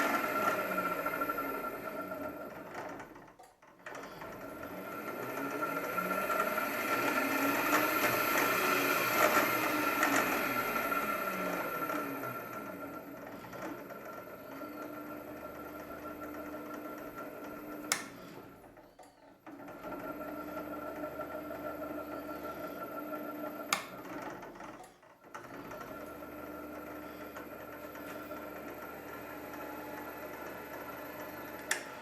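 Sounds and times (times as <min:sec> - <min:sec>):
motor running down and starting: 0:00.0 - 0:02.5, 0:04.0 - 0:18.3
drill motor humming with whine: 0:04.1 - 0:18.5, 0:25.5 - 0:32.0
switch clicking: 0:17.9 - 0:18.2, 0:23.7 - 0:24.0, 0:31.6 - 0:32.0.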